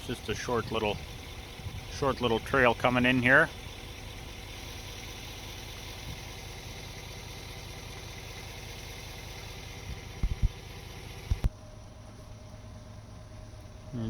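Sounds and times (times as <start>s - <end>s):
truck engine and road rumble: 0.0s - 14.0s.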